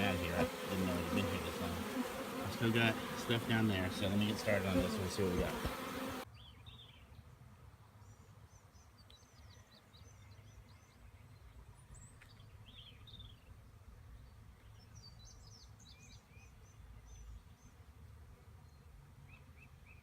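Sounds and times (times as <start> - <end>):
small birds chirping: 8.0 - 13.5.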